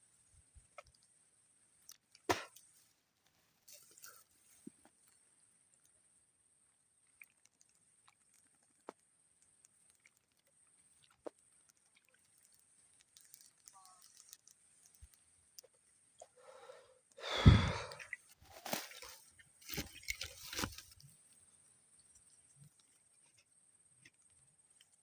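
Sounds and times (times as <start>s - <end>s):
person exhaling heavily: 16.4s - 18.1s.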